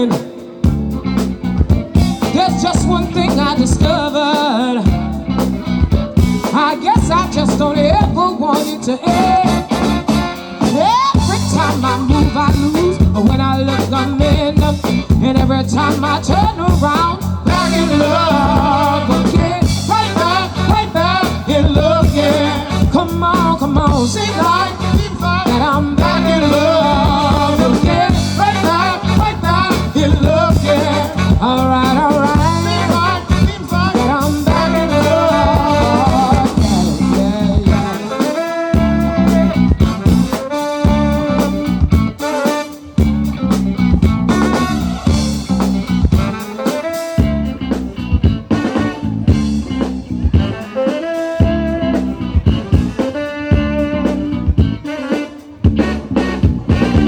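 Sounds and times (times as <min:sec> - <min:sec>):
live funk band with singing: 0:00.0 - 0:57.0
long held horn notes: 0:50.4 - 0:57.0.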